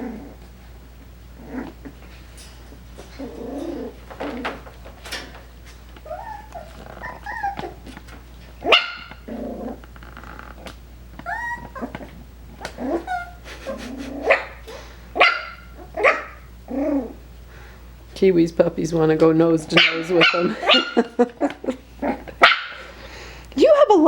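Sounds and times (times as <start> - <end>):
puppies growling: 0.0 - 17.8, 19.4 - 23.4
puppies yipping and barking: 1.6 - 10.0, 10.6 - 17.2, 19.7 - 23.0.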